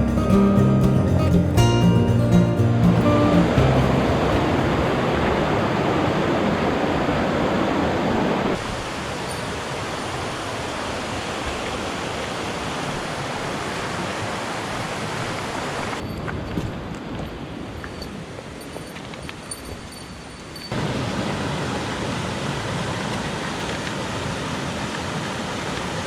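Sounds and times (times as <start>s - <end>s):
mountain stream rushing: 0.0s - 26.0s.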